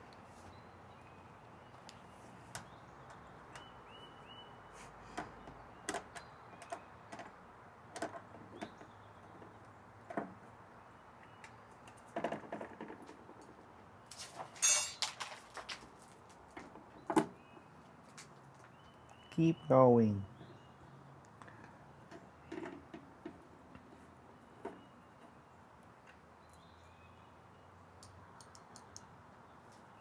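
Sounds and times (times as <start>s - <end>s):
metal parts and tools clattering: 14.2s - 15.7s.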